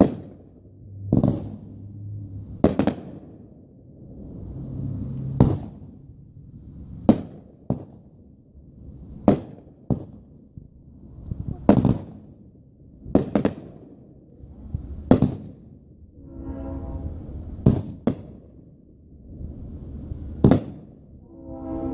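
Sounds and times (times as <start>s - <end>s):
fireworks bangs: 0.0s - 3.8s, 5.3s - 6.2s, 7.0s - 10.7s, 11.4s - 14.2s, 15.0s - 16.0s, 17.4s - 18.8s, 20.4s - 21.1s
firework hiss: 0.0s - 21.2s
firework whistling tone: 14.3s - 18.6s, 19.2s - 21.9s.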